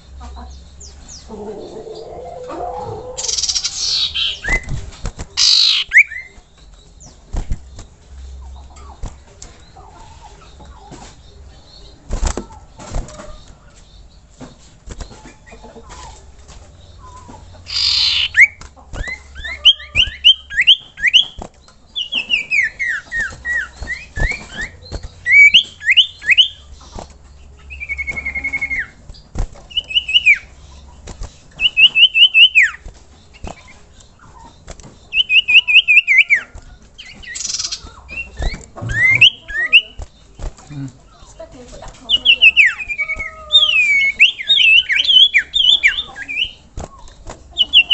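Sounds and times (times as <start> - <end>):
bird whistling song: 1.9 - 8.4, 16.9 - 40.4, 42.0 - 47.9.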